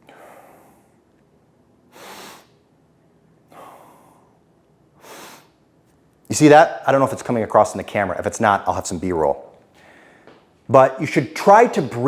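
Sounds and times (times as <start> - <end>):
man breathing deeply: 0.0 - 1.1, 1.9 - 2.6, 3.5 - 4.4, 5.0 - 5.6, 9.7 - 10.4.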